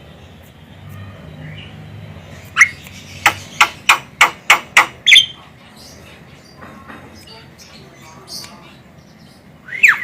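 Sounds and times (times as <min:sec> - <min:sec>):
myna bird squawking: 0:05.0 - 0:05.4.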